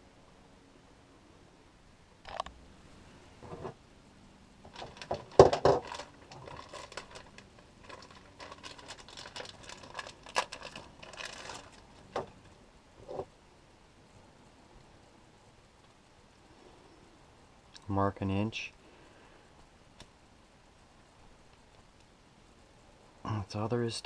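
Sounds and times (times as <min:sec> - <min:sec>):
scraping and rubbing on pipe: 0:03.4 - 0:03.8.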